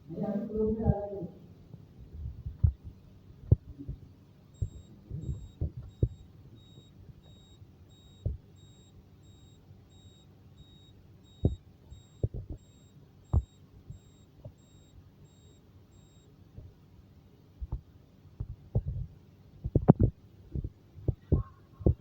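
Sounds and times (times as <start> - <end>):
fire alarm panel beeping: 4.5 - 16.3.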